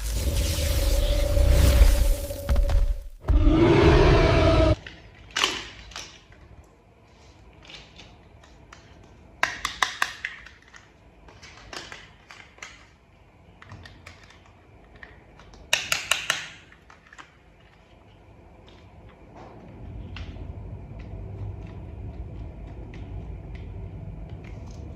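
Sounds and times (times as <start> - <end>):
plastic parts clicking and rattling: 4.8 - 6.5, 7.6 - 18.9.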